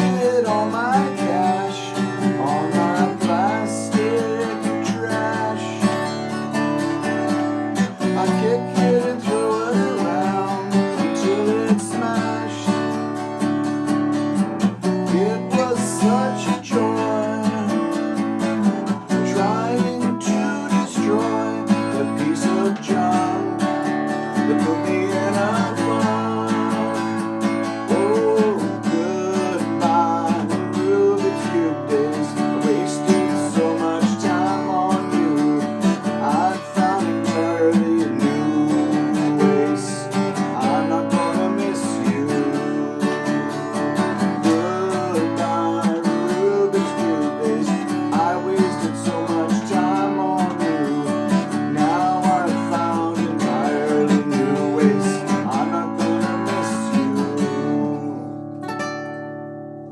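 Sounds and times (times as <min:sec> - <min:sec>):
strummed acoustic guitar: 0:00.0 - 0:59.9
melody line: 0:58.6 - 0:59.9.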